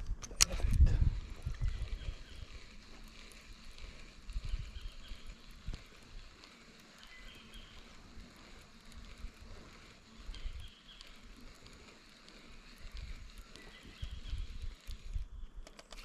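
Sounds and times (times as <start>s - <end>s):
wind buffeting microphone: 0.0s - 15.7s.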